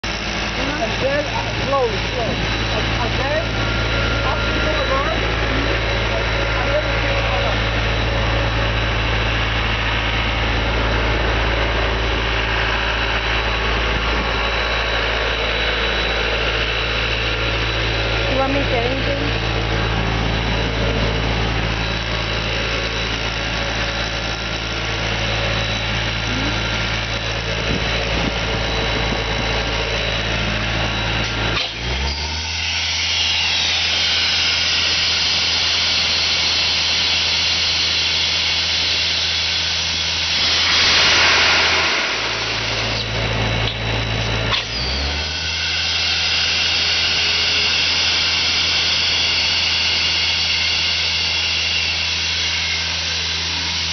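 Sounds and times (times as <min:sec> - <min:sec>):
engine hum: 0:00.0 - 0:53.9
high whine: 0:00.0 - 0:53.9
loud rushing: 0:38.7 - 0:47.8.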